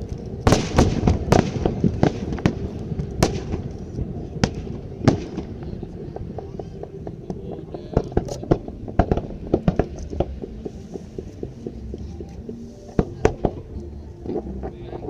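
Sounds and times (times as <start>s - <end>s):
fireworks bursting: 0.0s - 15.0s
steady low rumble: 0.0s - 15.0s.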